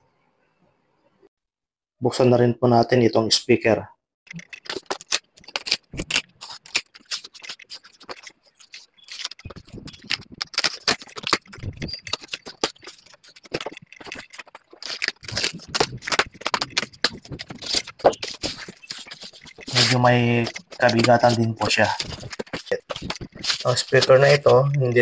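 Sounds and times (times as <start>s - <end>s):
cardboard box being opened: 4.5s - 24.8s.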